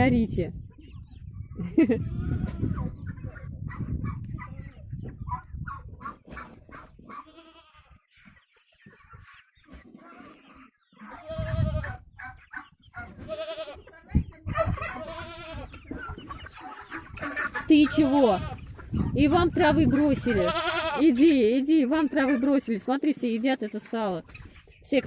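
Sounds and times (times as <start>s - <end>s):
hens clucking: 0.1s - 25.0s
goats bleating: 7.2s - 7.9s, 13.2s - 13.9s, 14.9s - 15.7s, 20.0s - 21.0s.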